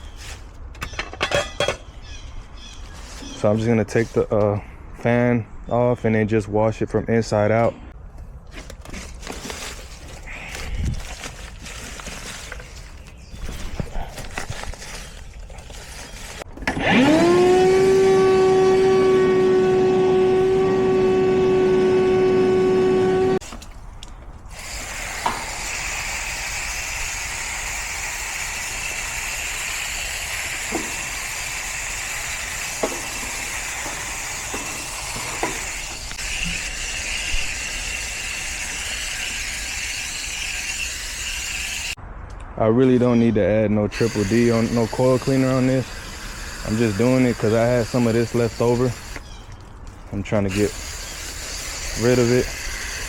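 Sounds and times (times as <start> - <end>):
small electric motor whining: 15.7 - 23.5, 24.5 - 42.0, 43.9 - 49.4, 50.3 - 53.0
hissing water spray: 24.5 - 42.0, 44.0 - 49.4, 50.3 - 53.0.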